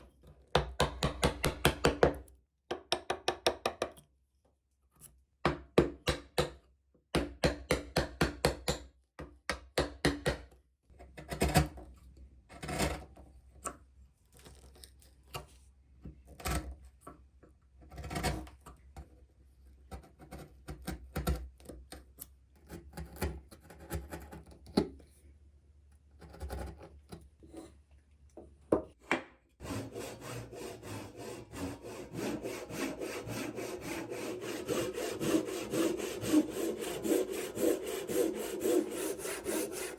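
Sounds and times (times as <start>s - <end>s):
handsaw cutting wood: 29.6s - 39.9s
scraping strokes: 29.6s - 39.9s.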